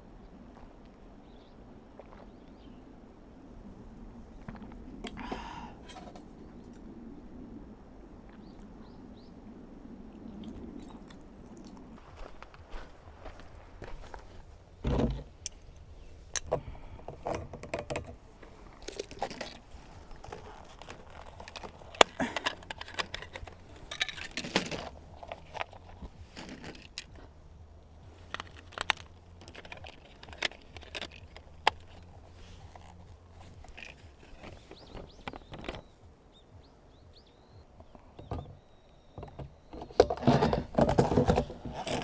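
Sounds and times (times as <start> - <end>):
low steady hum: 0.0 - 42.0
small objects clicking and rustling: 10.9 - 27.3, 27.9 - 35.9.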